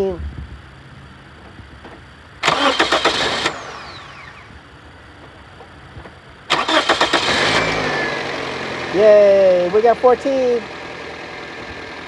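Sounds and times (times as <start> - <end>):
starter cranking engine: 2.4 - 4.5, 6.5 - 8.5.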